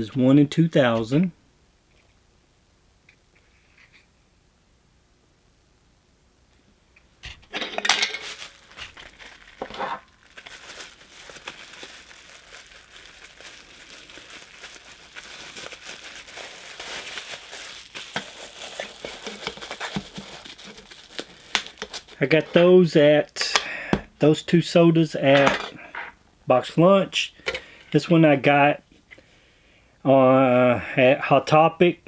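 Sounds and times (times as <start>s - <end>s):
plastic packaging crinkling: 7.5s - 22.7s.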